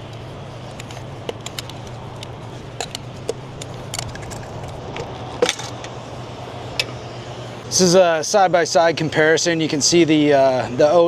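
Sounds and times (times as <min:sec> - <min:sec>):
screwdriver and clamp clicking: 0:00.7 - 0:06.0.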